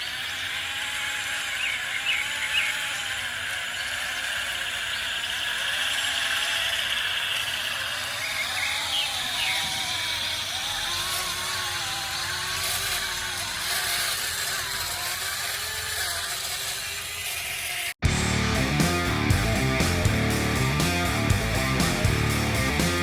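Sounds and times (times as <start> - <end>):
small electric motors whirring: 0.0 - 18.3
rock music with guitar: 18.0 - 23.0.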